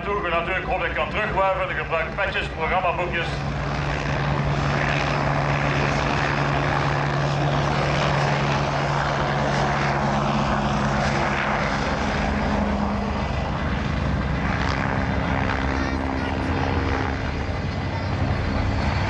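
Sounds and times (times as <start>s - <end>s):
helicopter engines and rotors: 0.0s - 19.0s.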